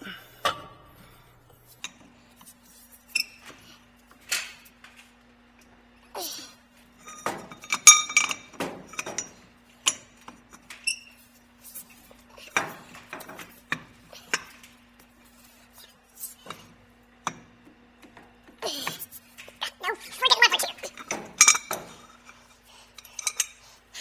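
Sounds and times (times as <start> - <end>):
metal pipe fittings clanking: 7.0 - 11.2, 20.2 - 22.4, 23.0 - 23.6.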